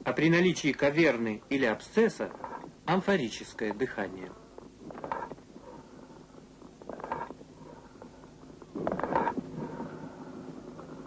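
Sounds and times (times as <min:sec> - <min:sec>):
hollow breathing through stethoscope: 0:05.6 - 0:11.0.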